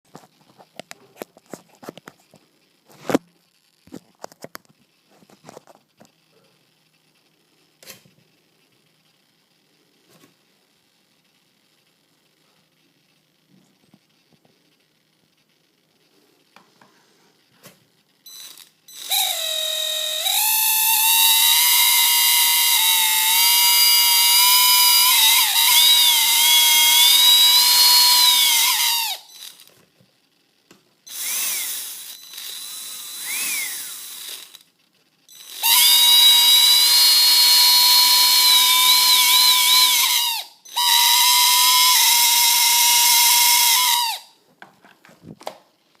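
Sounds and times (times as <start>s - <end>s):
electric motor high whine: 18.3s - 29.8s, 31.1s - 34.7s, 35.3s - 44.3s.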